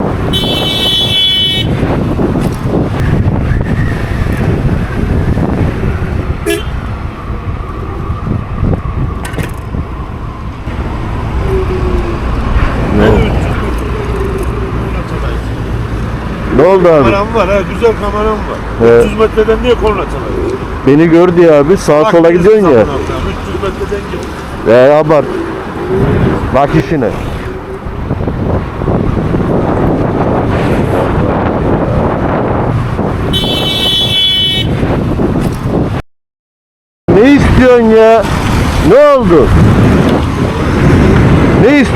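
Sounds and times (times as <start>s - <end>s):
wind buffeting microphone: 0.0s - 20.8s, 22.9s - 36.0s, 37.1s - 41.9s
road traffic noise: 0.0s - 36.0s, 37.1s - 41.9s
short horn beep: 6.4s - 6.8s, 33.3s - 34.7s.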